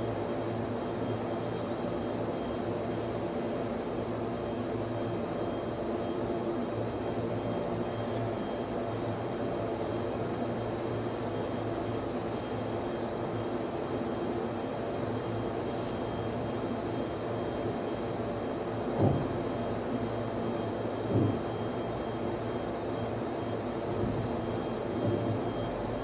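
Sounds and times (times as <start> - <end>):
cooling fans whirring: 0.0 - 26.0.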